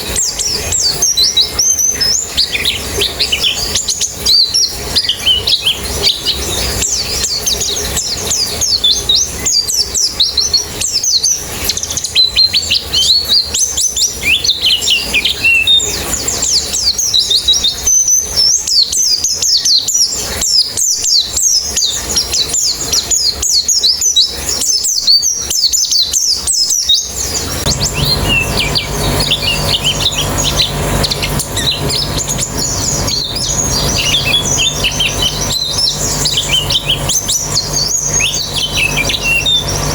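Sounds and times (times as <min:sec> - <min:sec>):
birds chirping and twittering: 0:00.0 - 0:39.9
steady low hum: 0:27.2 - 0:39.9.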